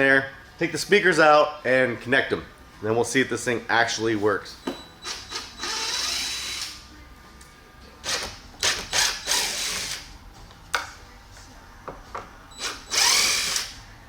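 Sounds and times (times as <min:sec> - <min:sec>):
power drill running: 0:05.0 - 0:06.8, 0:08.0 - 0:10.1, 0:12.6 - 0:13.8.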